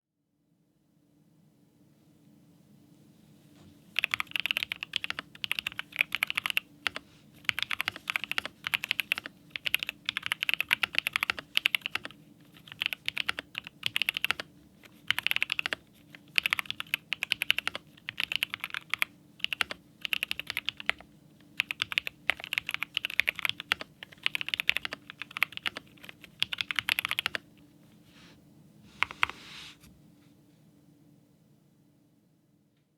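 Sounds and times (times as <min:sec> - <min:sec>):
mechanical keyboard typing: 0:04.0 - 0:27.5.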